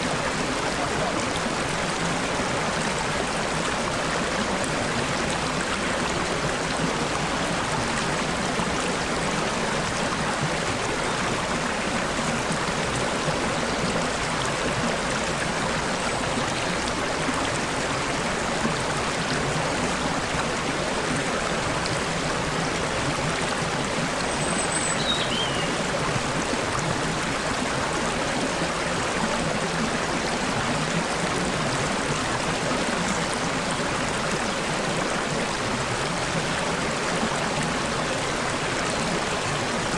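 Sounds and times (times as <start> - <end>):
stream babbling: 0.0 - 39.9
bird chirping: 24.3 - 25.8.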